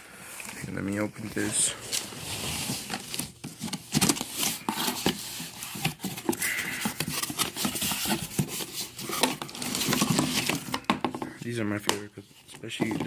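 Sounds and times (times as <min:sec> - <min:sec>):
cardboard and tubes clicking and scraping: 0:00.4 - 0:13.0
cardboard rustle: 0:00.4 - 0:13.0.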